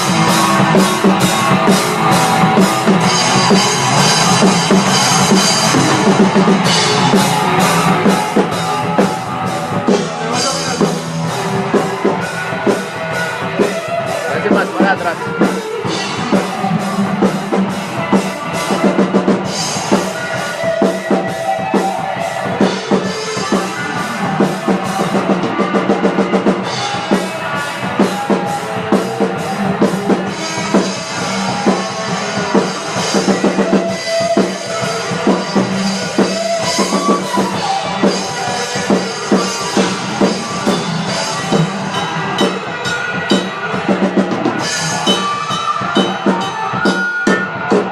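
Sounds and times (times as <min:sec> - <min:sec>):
steady held instrument notes: 0:00.0 - 0:20.5
drum kit playing busy beat: 0:00.0 - 0:47.9.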